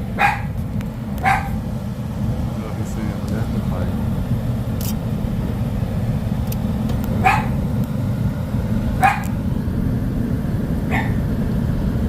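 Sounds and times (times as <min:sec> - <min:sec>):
steady low rumble: 0:00.0 - 0:12.0
dog barking: 0:00.2 - 0:00.6, 0:01.2 - 0:01.6, 0:07.2 - 0:07.6, 0:09.0 - 0:09.3, 0:10.9 - 0:11.2.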